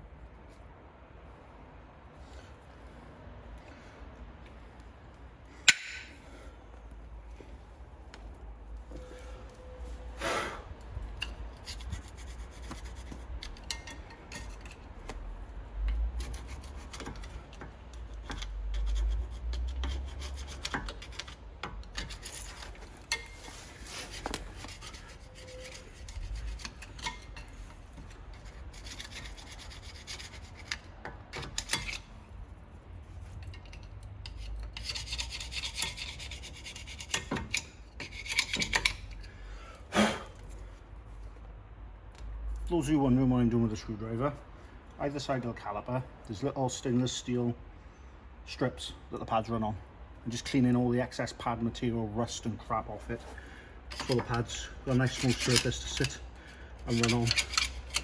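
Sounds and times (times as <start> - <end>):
screwdriver scraping metal: 11.2 - 14.9, 16.2 - 32.1, 33.3 - 39.2, 53.9 - 56.2, 56.8 - 58.0.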